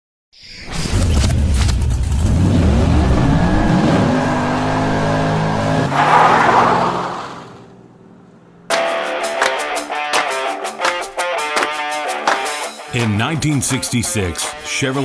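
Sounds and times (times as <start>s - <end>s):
car engine revving: 1.6s - 8.7s.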